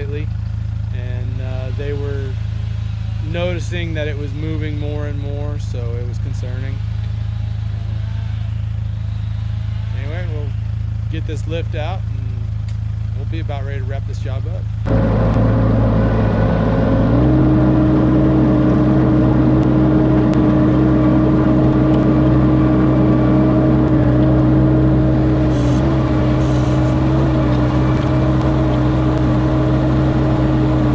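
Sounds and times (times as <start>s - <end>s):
aerial lift engine running: 0.0s - 14.1s, 14.9s - 30.9s.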